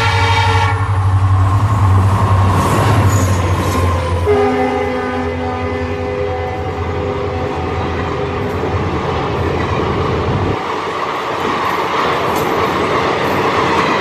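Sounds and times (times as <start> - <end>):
train horn: 0.0 - 1.0, 3.8 - 8.7
train running past: 0.0 - 14.0.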